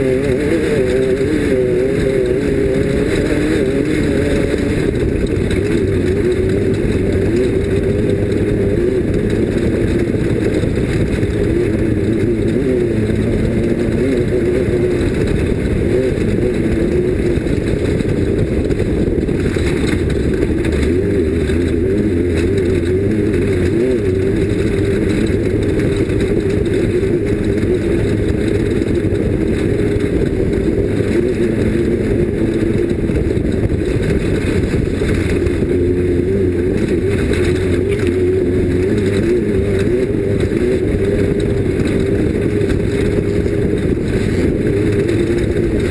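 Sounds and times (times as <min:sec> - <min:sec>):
race vehicle engine running loudly: 0:00.0 - 0:45.9.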